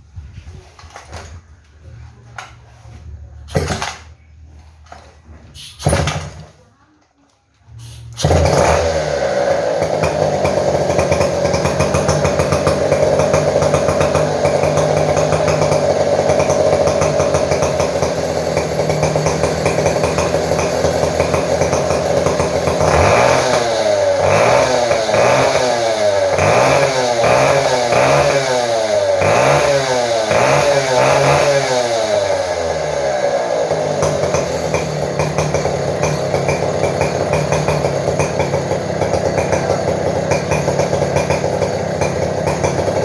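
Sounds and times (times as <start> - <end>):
chainsaw engine idling and revving: 2.4 - 4.1, 5.8 - 6.6, 7.8 - 43.0.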